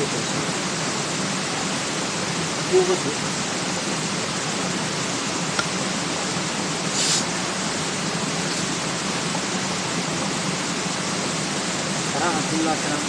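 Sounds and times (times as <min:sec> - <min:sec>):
steady rushing noise: 0:00.0 - 0:13.0
short high hiss: 0:06.8 - 0:07.6.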